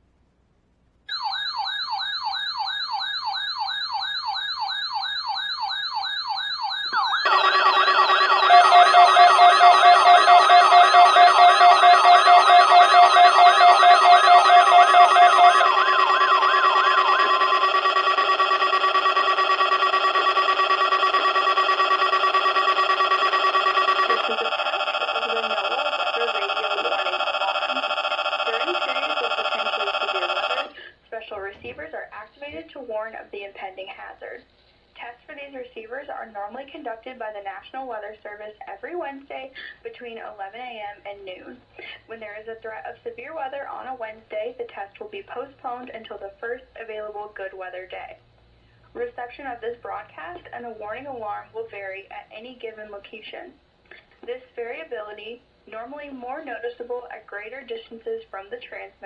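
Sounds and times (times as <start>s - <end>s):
pulsing beep: 1.1s - 30.7s
steady alarm tones: 1.1s - 30.8s
warbling alarm siren: 1.1s - 30.8s
faint broadcast voice: 24.1s - 27.2s, 28.5s - 32.7s.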